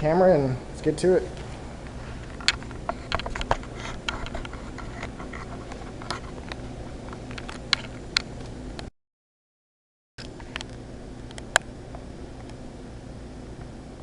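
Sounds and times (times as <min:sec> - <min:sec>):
steady low hum: 0:00.0 - 0:08.9, 0:10.2 - 0:14.0.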